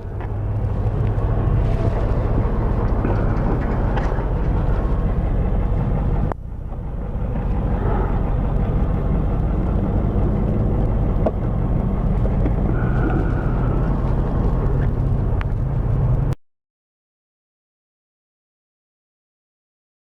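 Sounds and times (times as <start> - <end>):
wind noise on microphone: 0.0 - 6.3
scooter engine running: 0.0 - 15.5.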